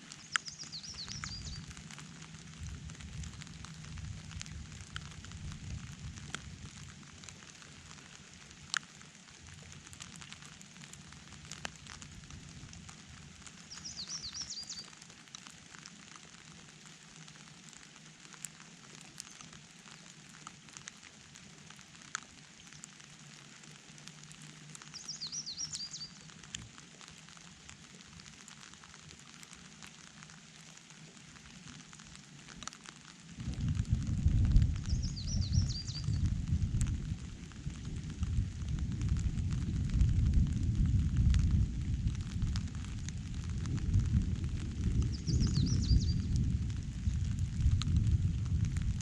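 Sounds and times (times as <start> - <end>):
light rain pattering: 0.0 - 49.0
sharp drips close by: 0.0 - 49.0
bird chirping: 0.2 - 1.7, 13.7 - 14.9, 25.0 - 26.2, 34.9 - 36.2, 45.1 - 46.3.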